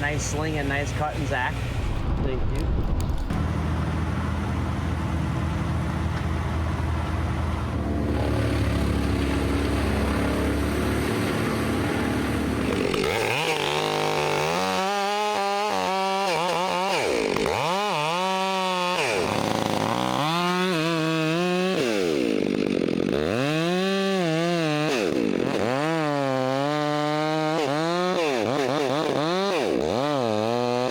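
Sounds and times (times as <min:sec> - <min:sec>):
engine running low: 0:00.0 - 0:14.5
chainsaw revving and cutting: 0:07.7 - 0:30.9.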